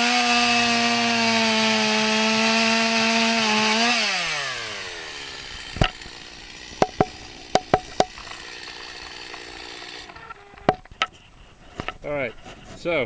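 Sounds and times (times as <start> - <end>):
chainsaw engine revving down: 0.0 - 10.8
sharp knocks: 5.7 - 6.1, 6.8 - 9.5, 10.6 - 11.2.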